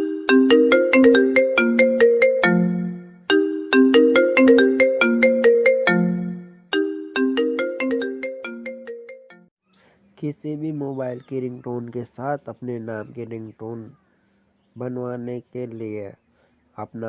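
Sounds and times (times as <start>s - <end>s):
mobile phone ringtone: 0.0s - 9.5s.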